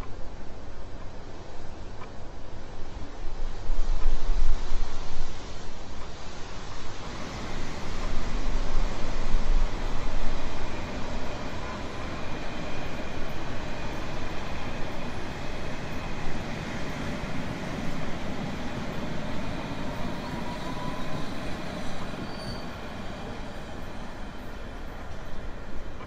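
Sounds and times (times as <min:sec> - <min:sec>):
train rumbling on rails: 0:00.0 - 0:26.0
faint wheel squeals: 0:20.0 - 0:23.3.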